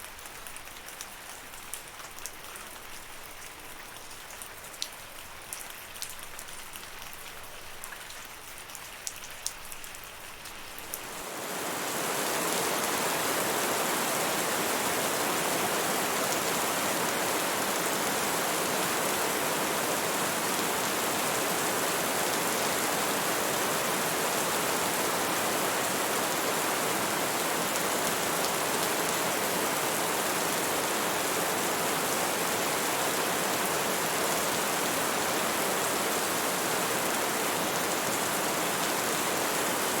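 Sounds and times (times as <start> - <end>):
dense downpour hiss: 0.0 - 40.0.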